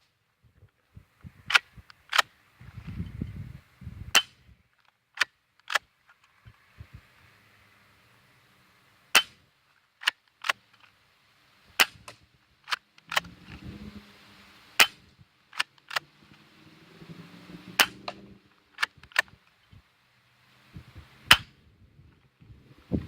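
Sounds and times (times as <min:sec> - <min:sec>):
air pistol snaps and clicks: 0:01.5 - 0:02.3, 0:04.1 - 0:05.9, 0:09.1 - 0:09.4, 0:10.0 - 0:10.9, 0:11.8 - 0:13.6, 0:14.8 - 0:16.1, 0:17.8 - 0:19.5, 0:21.3 - 0:21.5.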